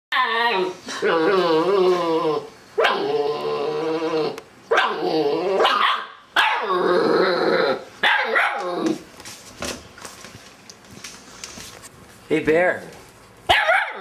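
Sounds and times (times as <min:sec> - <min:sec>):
puppy growl-barking: 0:00.1 - 0:09.0, 0:13.5 - 0:14.0.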